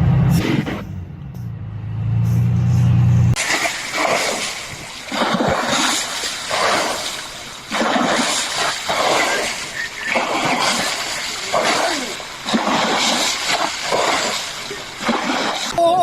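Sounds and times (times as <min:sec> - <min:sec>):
low engine hum: 0:00.0 - 0:05.3
water splashing and rushing: 0:03.4 - 0:16.0.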